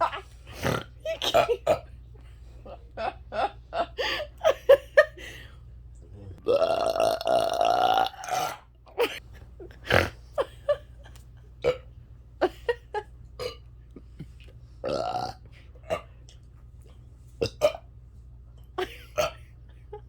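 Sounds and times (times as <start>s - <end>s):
person burping: 0.5s - 1.8s, 6.4s - 8.7s, 14.8s - 16.0s.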